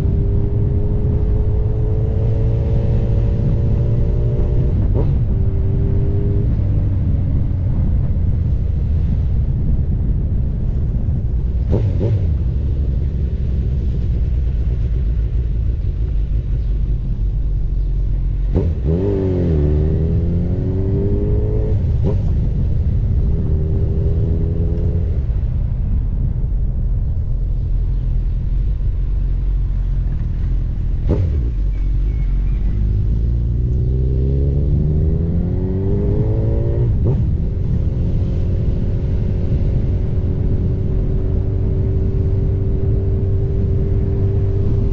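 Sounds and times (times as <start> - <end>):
low rumble: 0.0 - 44.9
motorcycle engine revving: 18.4 - 25.3, 29.5 - 44.9.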